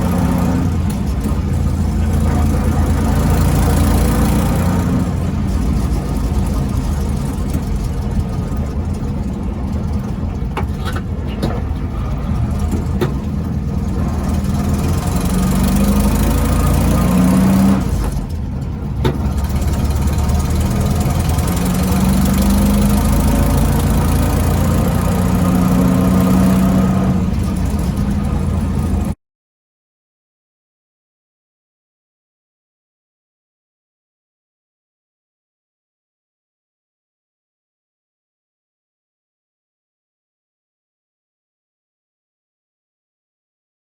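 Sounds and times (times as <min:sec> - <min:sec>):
transmission drone: 0:00.0 - 0:29.1
car engine running: 0:00.0 - 0:29.2.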